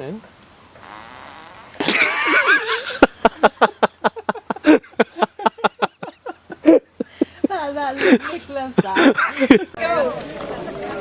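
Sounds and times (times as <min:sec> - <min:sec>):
person laughing: 0:01.8 - 0:07.1.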